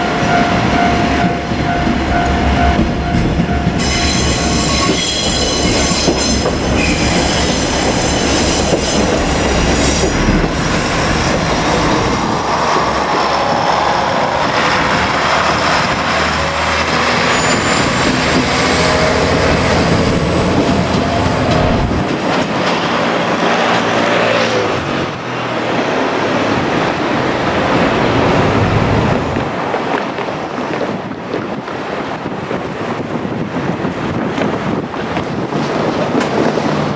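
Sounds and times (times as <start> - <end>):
wheels squealing: 0.0 - 23.6
train wheels clacking over rail joints: 0.1 - 24.0.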